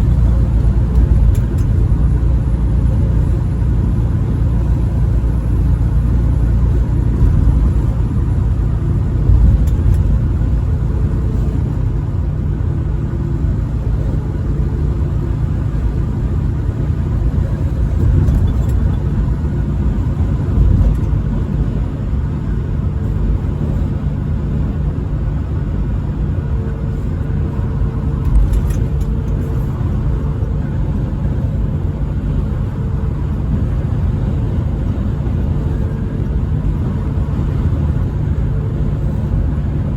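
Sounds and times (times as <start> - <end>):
vehicle engine and road rumble: 0.0 - 39.9.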